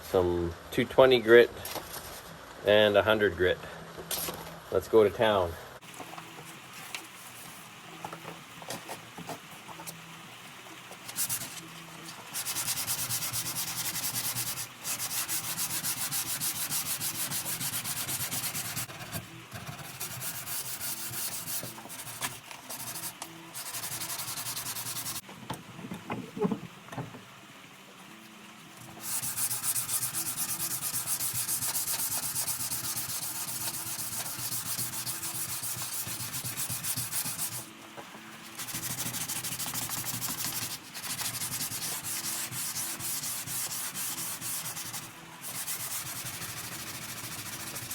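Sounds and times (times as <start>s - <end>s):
sandpaper rubbing on wood: 11.1s - 11.6s, 12.3s - 25.2s, 29.0s - 37.7s, 38.4s - 47.9s.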